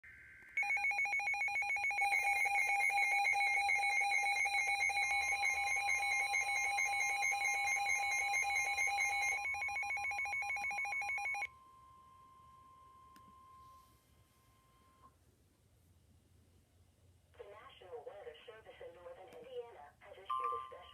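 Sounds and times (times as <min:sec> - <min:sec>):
rapid electronic beeping alarm: 0:00.6 - 0:11.5
steady warning tone: 0:00.6 - 0:13.9.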